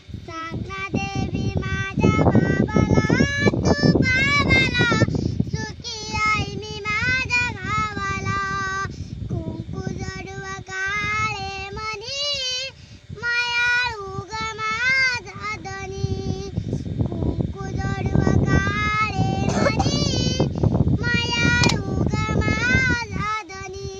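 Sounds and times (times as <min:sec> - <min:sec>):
girl singing long held notes: 0:00.2 - 0:23.9.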